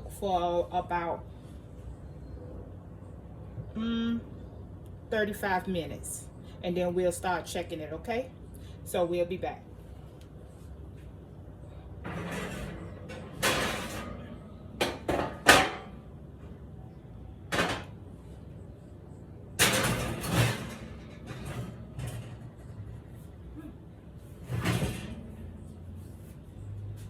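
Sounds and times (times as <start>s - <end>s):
kitchen knocks and clatters: 12.0s - 16.0s, 17.5s - 17.9s, 19.6s - 22.9s
rattling and scraping: 12.0s - 16.0s, 19.6s - 23.3s.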